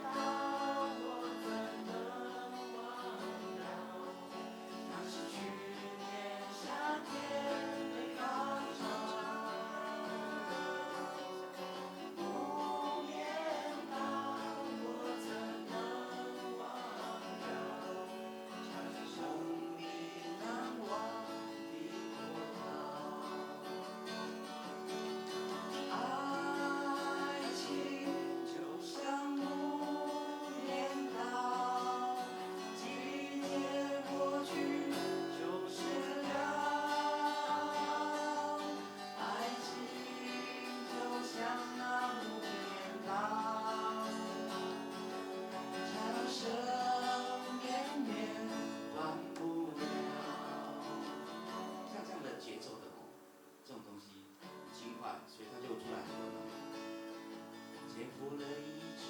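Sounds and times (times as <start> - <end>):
person singing: 0.0 - 52.1, 57.7 - 59.0
strummed acoustic guitar: 0.0 - 59.0.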